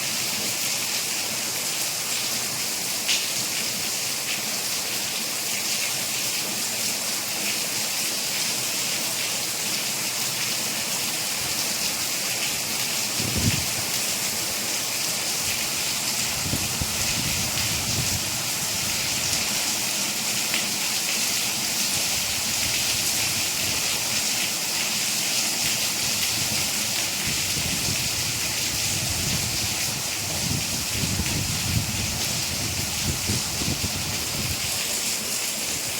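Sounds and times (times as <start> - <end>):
steady rain falling: 0.0 - 35.9.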